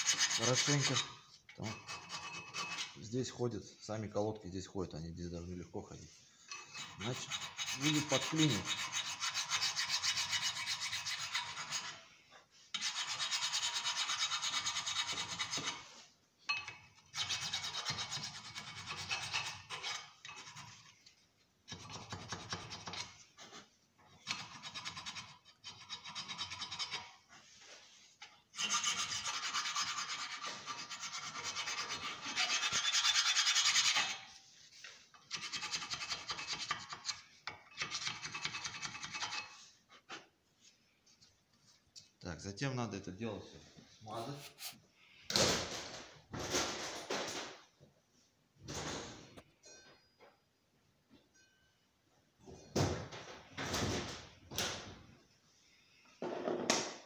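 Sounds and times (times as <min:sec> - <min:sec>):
rasping scraping on metal: 0:00.0 - 0:03.4, 0:06.5 - 0:12.1, 0:12.7 - 0:16.1, 0:17.0 - 0:21.0, 0:21.7 - 0:27.2, 0:28.5 - 0:40.3.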